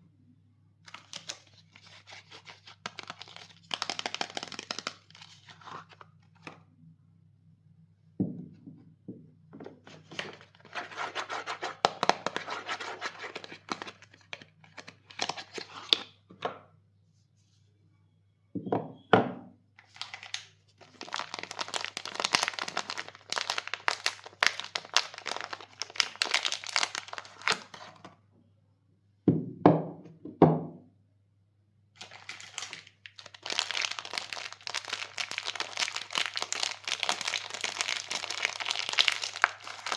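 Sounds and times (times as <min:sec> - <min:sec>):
wrappers crinkling and tearing: 0:00.9 - 0:06.5, 0:12.2 - 0:16.0, 0:19.8 - 0:28.0, 0:32.0 - 0:39.9.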